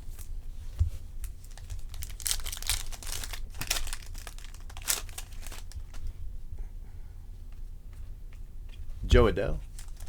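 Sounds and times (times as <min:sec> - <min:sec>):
wrapper crinkling and tearing: 0:01.2 - 0:06.1, 0:09.7 - 0:10.0.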